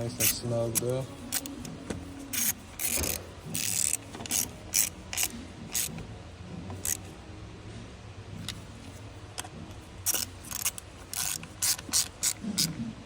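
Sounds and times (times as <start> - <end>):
ratchet wrench clicking: 0.0 - 6.0, 6.8 - 7.1, 10.0 - 12.8.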